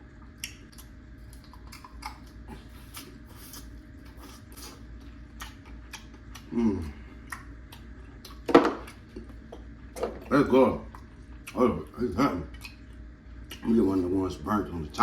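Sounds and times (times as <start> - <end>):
low appreciative hum: 0.0 - 15.0
chewing and wet mouth clicks: 0.3 - 6.5, 7.2 - 9.4, 12.5 - 13.7.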